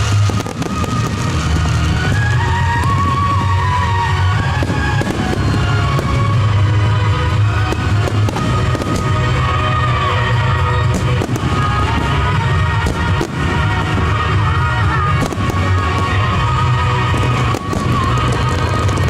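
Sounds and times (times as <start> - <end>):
fireworks bangs: 0.0 - 19.0
loud music with heavy bass: 0.0 - 19.0.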